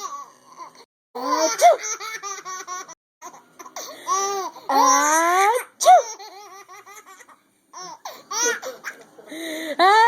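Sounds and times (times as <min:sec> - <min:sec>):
baby giggling: 0:01.2 - 0:09.1
woman sneezing: 0:05.8 - 0:06.1.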